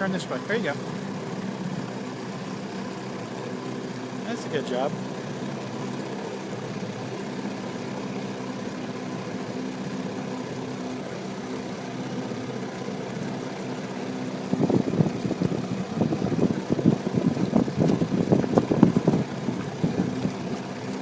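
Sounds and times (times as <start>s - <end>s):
outboard motor running: 0.0s - 21.0s
wind buffeting microphone: 14.3s - 21.0s.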